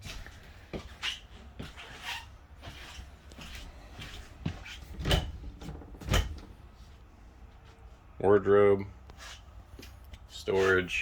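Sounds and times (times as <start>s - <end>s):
cabinet doors opening and shutting: 4.8s - 6.6s.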